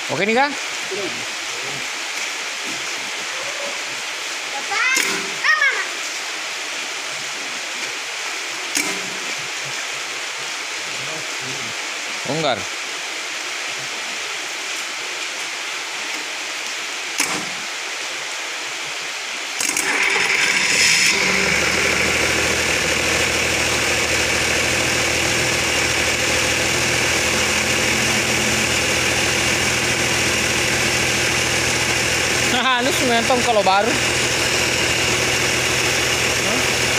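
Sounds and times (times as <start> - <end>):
diesel engine starter cranking: 8.7 - 9.2, 19.6 - 36.9
diesel engine idling: 19.7 - 36.9.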